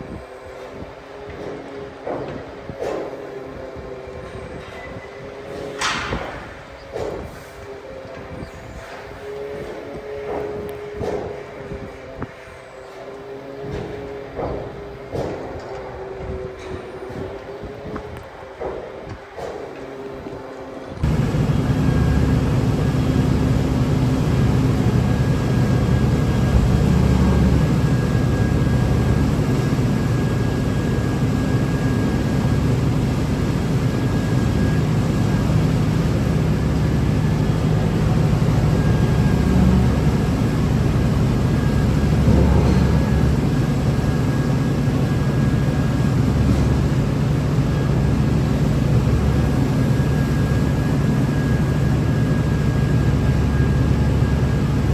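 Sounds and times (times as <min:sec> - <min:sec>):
farm machinery engine drone: 0:00.0 - 0:18.8, 0:20.0 - 0:54.9
faint steady whine: 0:21.0 - 0:54.9.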